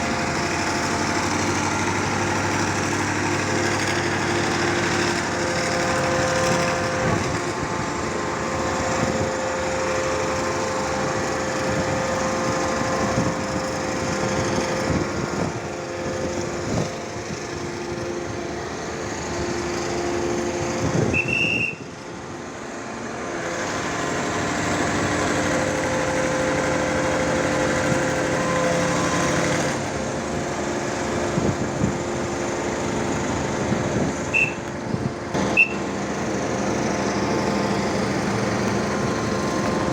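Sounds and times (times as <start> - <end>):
pile driver hydraulic whine: 0.0 - 39.9
short high beep: 34.3 - 34.6, 35.5 - 35.9.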